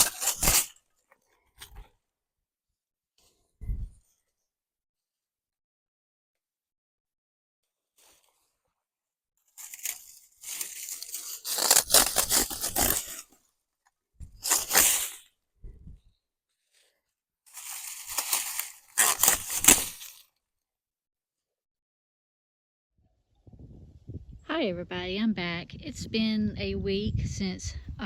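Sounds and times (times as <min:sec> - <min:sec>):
dry brush crunching and rustling: 0:00.0 - 0:00.7, 0:09.5 - 0:13.4, 0:14.4 - 0:15.2, 0:17.5 - 0:20.3.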